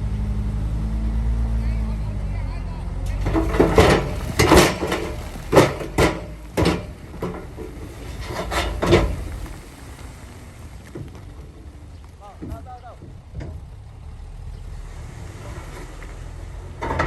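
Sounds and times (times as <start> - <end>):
heavy machinery diesel engine: 0.0 - 17.0
sharp metal clanks and knocks: 3.2 - 10.0.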